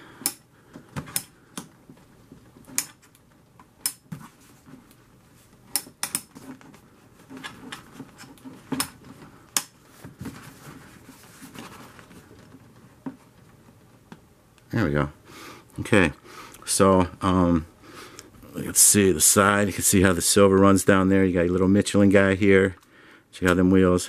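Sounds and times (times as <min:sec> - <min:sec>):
quiet rustling: 0:01.8 - 0:05.7, 0:06.3 - 0:14.3.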